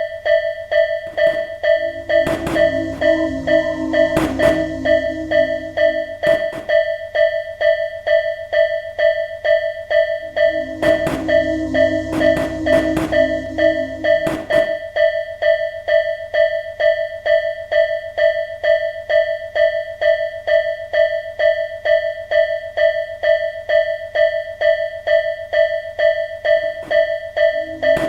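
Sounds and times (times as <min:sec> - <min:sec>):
level crossing warning bell: 0:01.1 - 0:06.2
low rumble: 0:01.7 - 0:06.4, 0:10.4 - 0:14.8.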